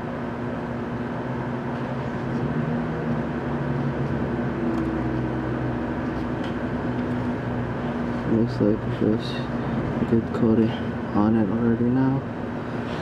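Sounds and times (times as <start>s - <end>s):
distant engine drone: 0.0s - 13.0s
held hum tones: 0.0s - 13.0s.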